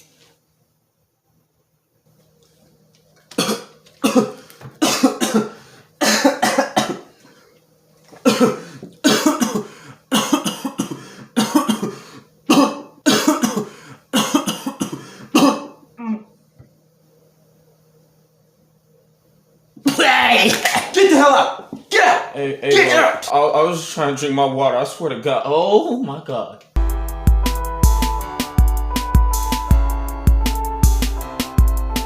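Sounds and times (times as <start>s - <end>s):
person coughing hard: 3.3s - 7.2s, 8.2s - 16.2s, 19.8s - 21.1s.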